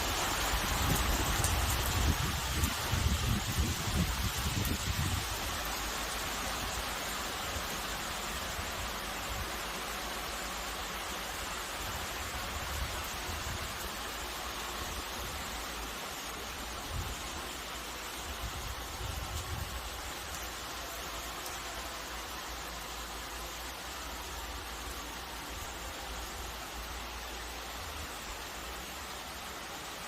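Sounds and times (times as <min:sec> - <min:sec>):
steady rain falling: 0:00.0 - 0:30.0
wind buffeting microphone: 0:00.7 - 0:05.4.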